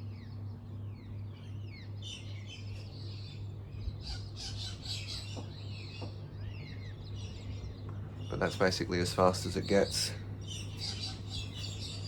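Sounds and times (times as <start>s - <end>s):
small birds chirping: 0.0s - 12.0s
ceiling fan motor humming: 6.6s - 12.0s.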